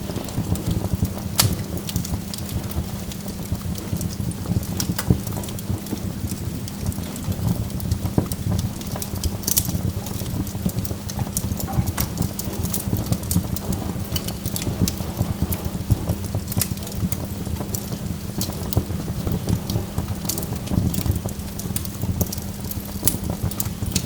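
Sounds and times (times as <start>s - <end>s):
steady low rumble: 0.0s - 18.9s
burning logs crackling: 0.0s - 24.0s.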